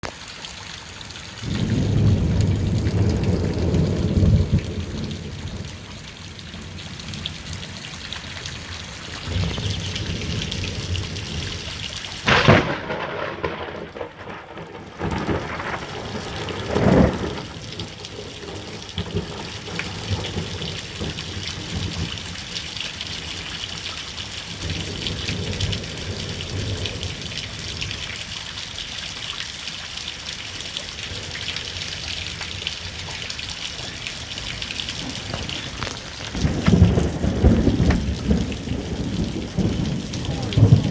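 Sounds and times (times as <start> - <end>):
steady rain falling: 0.0 - 40.9
low rumble of thunder: 1.4 - 28.5, 30.6 - 40.9
loud thunder clap: 1.5 - 5.8, 12.2 - 22.1, 34.3 - 40.9.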